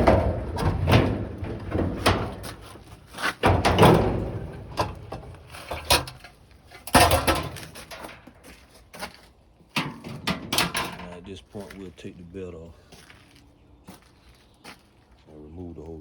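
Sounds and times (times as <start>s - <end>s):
metal panels clunking and rattling: 0.0s - 8.5s, 9.7s - 11.4s.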